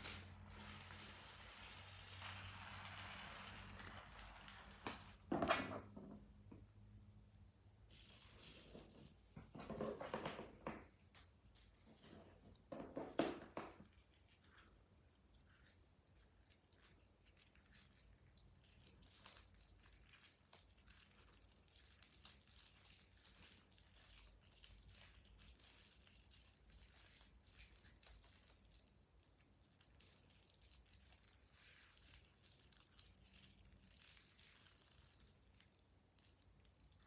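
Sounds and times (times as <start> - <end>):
slime crackling and squishing: 0.0 - 5.2, 13.8 - 37.0.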